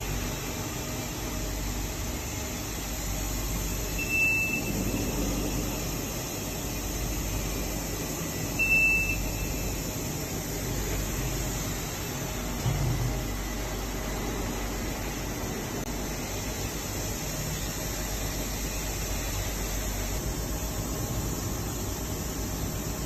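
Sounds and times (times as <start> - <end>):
grinding machine humming: 0.0 - 23.0
short high beeps: 4.0 - 4.7, 8.6 - 9.7.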